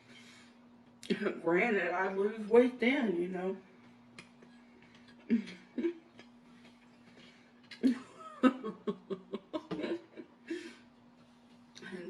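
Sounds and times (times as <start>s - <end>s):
steady low hum: 0.0s - 12.0s
woman chewing with mouth clicks: 4.1s - 7.8s.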